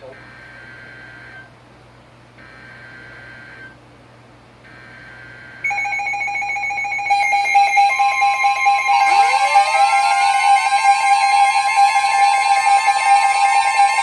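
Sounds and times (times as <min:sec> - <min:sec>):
faint electronic ringing pulses: 0:02.4 - 0:03.8, 0:04.7 - 0:14.0
loud electronic tone chord: 0:05.7 - 0:14.0.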